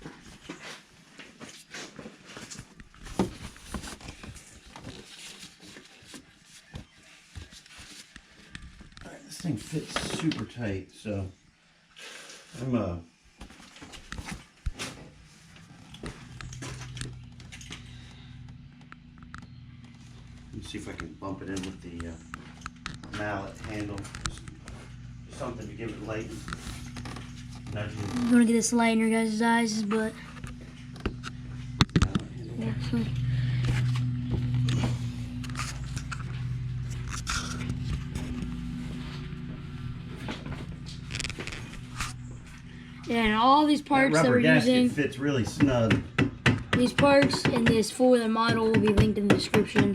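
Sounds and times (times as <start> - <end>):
low steady hum: 12.6 - 49.9
starter motor clicks and knocks: 15.9 - 28.3, 30.1 - 42.6, 45.4 - 49.9.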